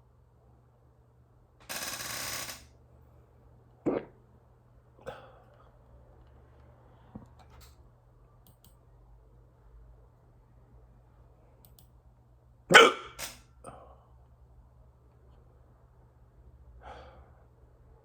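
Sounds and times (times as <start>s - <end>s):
person hiccuping: 3.9s - 4.2s, 12.7s - 13.3s.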